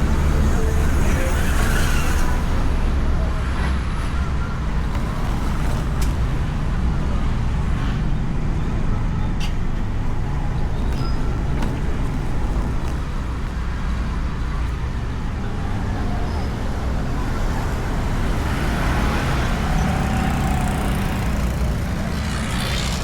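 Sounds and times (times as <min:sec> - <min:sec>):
scooter engine running: 0:00.0 - 0:06.5, 0:18.2 - 0:23.0
surrounding traffic: 0:00.0 - 0:23.0.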